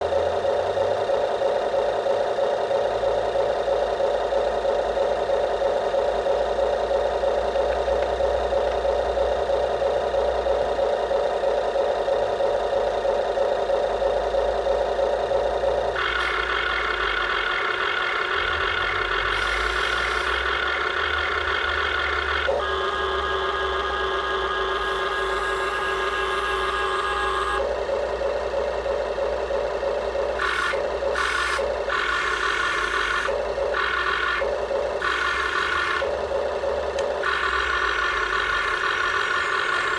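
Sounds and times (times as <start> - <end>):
toy backhoe motor buzzing: 0.0 - 39.9.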